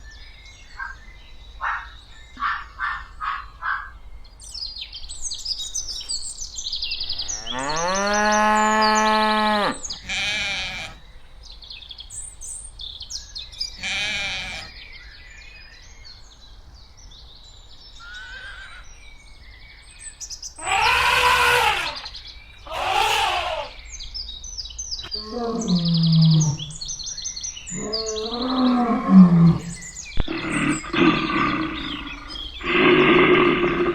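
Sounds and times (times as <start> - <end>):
birds chirping and tweeting: 0.0 - 33.9
livestock bleating: 7.3 - 11.0, 13.8 - 14.7, 20.6 - 22.1, 22.7 - 23.8
long drawn-out animal call: 7.3 - 11.0, 13.8 - 14.8, 18.0 - 18.9, 20.6 - 23.8, 25.1 - 27.0, 27.7 - 33.9.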